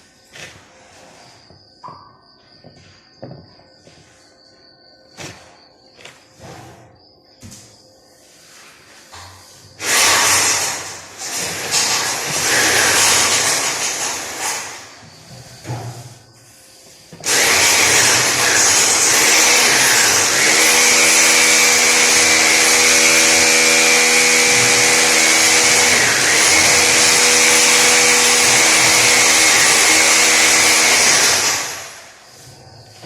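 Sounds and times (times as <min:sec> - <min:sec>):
power tool motor whining: 0:09.8 - 0:15.0, 0:17.2 - 0:32.2.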